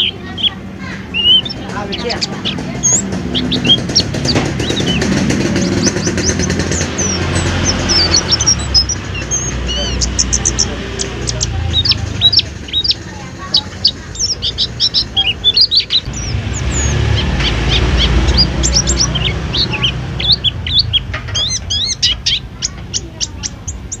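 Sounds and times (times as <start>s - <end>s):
bird twittering song: 0.0s - 24.0s
low rumble: 13.6s - 22.6s.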